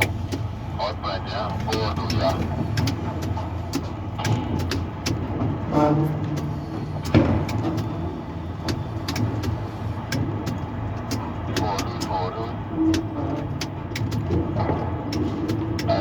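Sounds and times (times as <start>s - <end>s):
low machinery hum: 0.0s - 16.0s.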